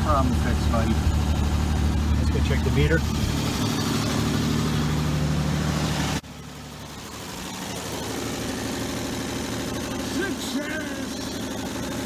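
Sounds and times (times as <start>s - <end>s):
car engine running: 0.0s - 12.0s.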